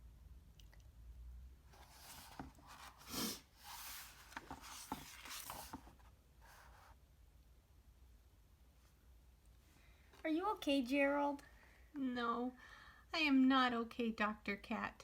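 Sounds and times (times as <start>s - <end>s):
paper pages rustling: 1.7s - 6.9s.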